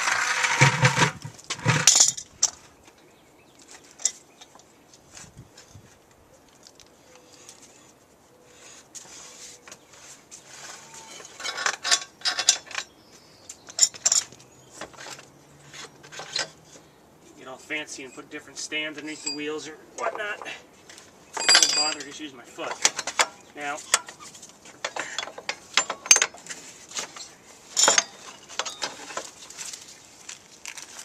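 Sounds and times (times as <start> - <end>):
metal tools clinking: 0.0 - 2.3, 4.0 - 4.6, 10.6 - 13.0, 13.6 - 16.8, 18.8 - 29.8.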